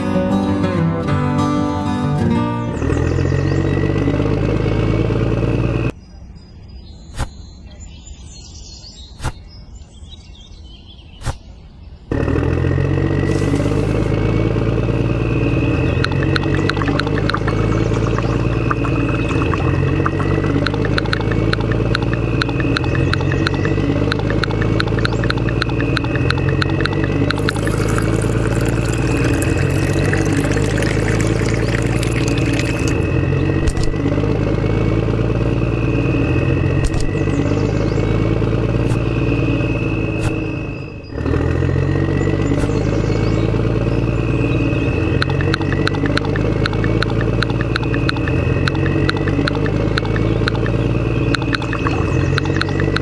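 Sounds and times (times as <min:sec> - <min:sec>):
motor humming: 0:12.1 - 0:34.4
sharp clicks: 0:16.0 - 0:27.4, 0:45.2 - 0:53.0.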